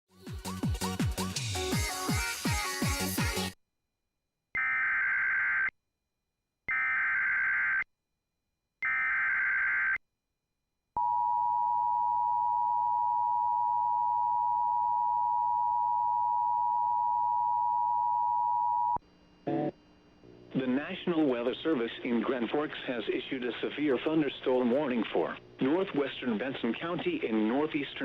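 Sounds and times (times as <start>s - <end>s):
music: 0.1s - 3.6s.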